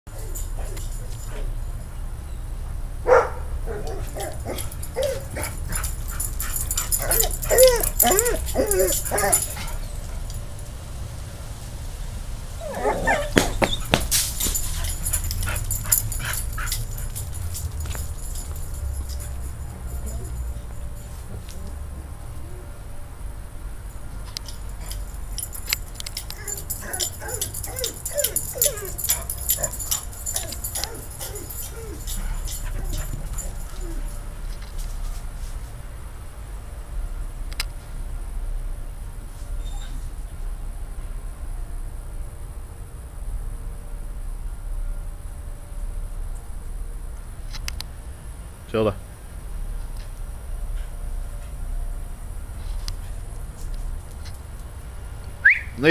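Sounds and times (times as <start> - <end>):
dog yipping whines: 3.1 - 10.0, 12.6 - 17.2, 26.2 - 34.1, 39.6 - 40.0.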